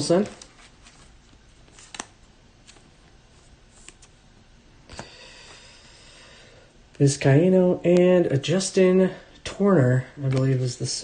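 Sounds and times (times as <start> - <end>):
cards rustling: 0.0 - 4.2, 10.0 - 11.0.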